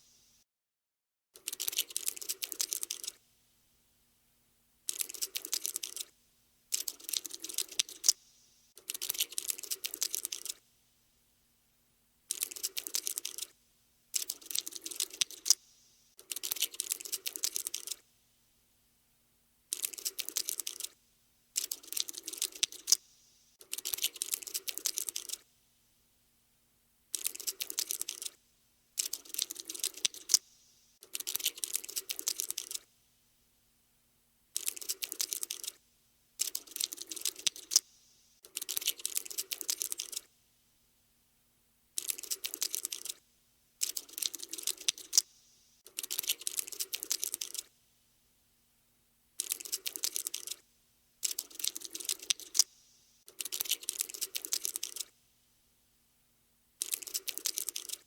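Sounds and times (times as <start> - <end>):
cockroach skittering clicks: 1.4 - 3.2, 4.9 - 10.6, 12.3 - 18.0, 19.7 - 21.0, 21.6 - 25.5, 27.1 - 28.4, 29.0 - 32.9, 34.6 - 35.8, 36.4 - 40.3, 42.0 - 43.2, 43.8 - 47.7, 49.4 - 50.6, 51.2 - 55.1, 56.8 - 58.0.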